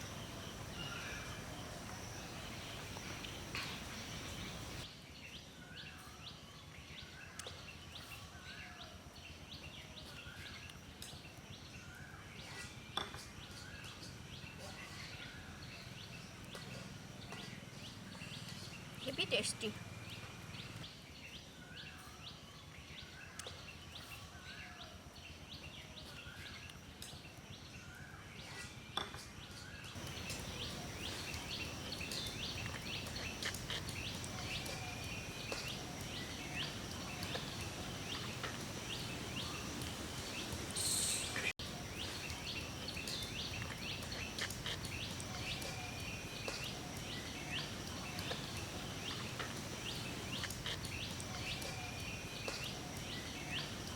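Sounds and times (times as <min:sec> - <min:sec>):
birds chirping and calling: 0:00.0 - 0:04.8, 0:29.9 - 0:53.9
outdoor background hiss: 0:00.0 - 0:53.9.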